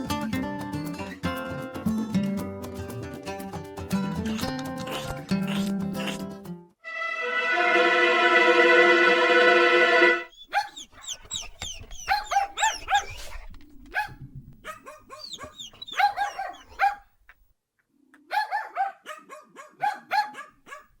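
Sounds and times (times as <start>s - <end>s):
high-pitched yipping barks: 10.4s - 17.1s, 18.3s - 21.0s.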